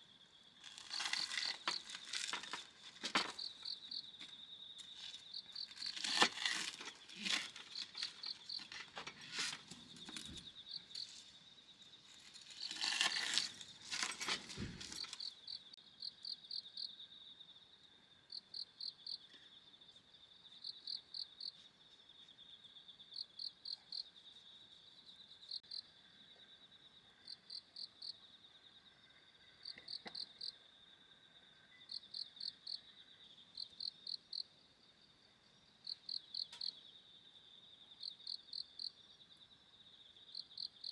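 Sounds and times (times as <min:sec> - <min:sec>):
crickets chirping: 0:00.0 - 0:40.9
crinkling and rustling: 0:00.6 - 0:11.4, 0:12.1 - 0:15.4.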